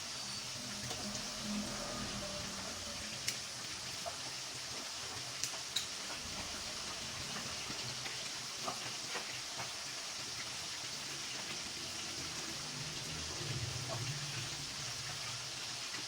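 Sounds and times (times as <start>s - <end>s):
food sizzling in hot oil: 0.0s - 16.0s.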